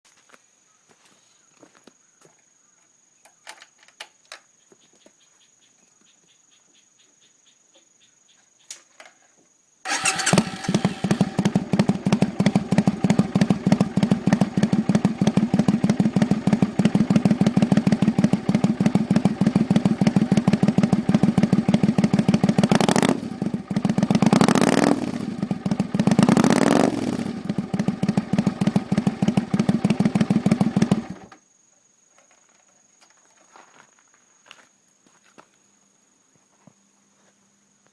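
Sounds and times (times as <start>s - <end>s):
motorcycle engine idling and revving: 9.9s - 31.4s.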